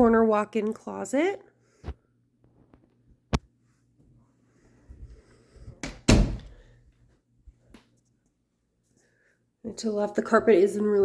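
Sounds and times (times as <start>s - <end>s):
door shutting with heavy thump: 5.8s - 6.6s.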